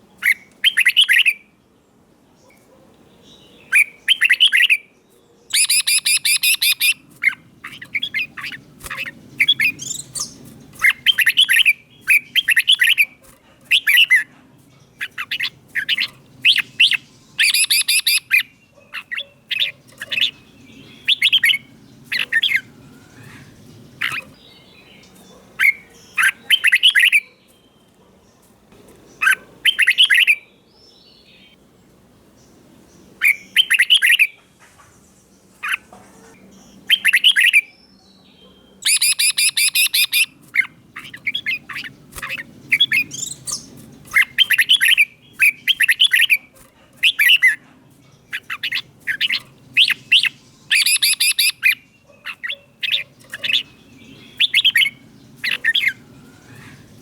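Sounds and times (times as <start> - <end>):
bird singing whistled phrases: 0.3 - 1.4, 3.7 - 4.8, 5.5 - 7.0, 15.0 - 18.5, 21.0 - 21.6, 29.7 - 30.4, 33.3 - 34.3, 38.4 - 40.3, 48.4 - 51.8, 54.2 - 56.8.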